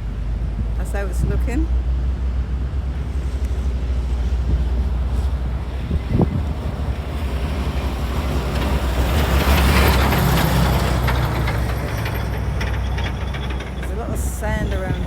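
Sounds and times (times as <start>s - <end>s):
vehicle engine rumbling: 0.0s - 15.0s.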